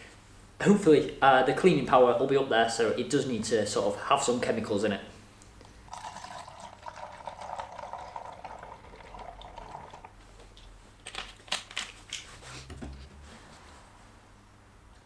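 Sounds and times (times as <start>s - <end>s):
water running into a container: 5.9s - 10.2s.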